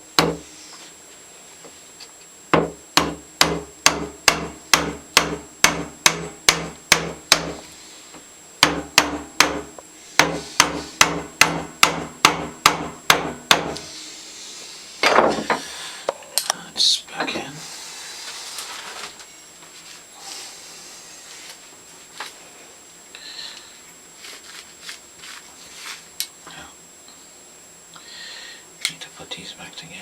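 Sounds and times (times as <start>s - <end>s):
hammer tapping on wood block: 2.6s - 7.6s, 10.2s - 13.8s.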